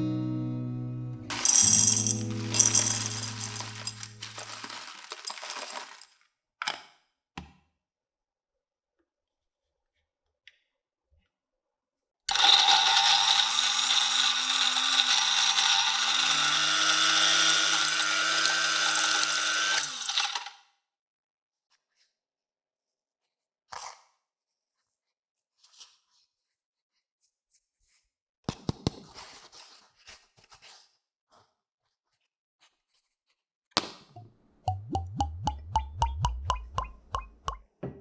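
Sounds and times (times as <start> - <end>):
coffee grinder motor grinding: 1.3 - 6.0, 12.3 - 20.6.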